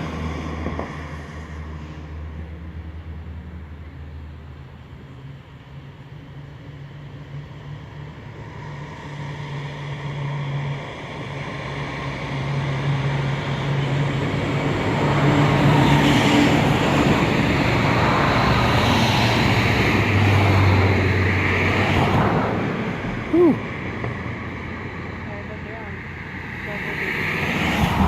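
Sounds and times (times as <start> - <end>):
deeper engine hum: 0.0 - 28.0
cars driving past: 6.8 - 28.0.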